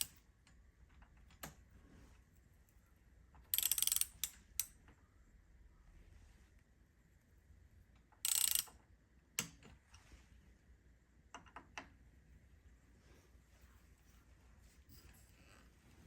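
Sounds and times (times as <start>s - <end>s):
torque wrench clicks: 3.5s - 4.8s, 8.2s - 8.8s
torque wrench ratcheting: 3.6s - 4.3s, 8.2s - 8.7s.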